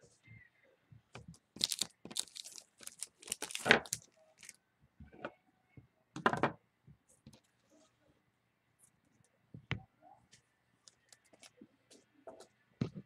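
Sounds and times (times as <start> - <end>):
rustling and crinkling: 1.2 - 4.6.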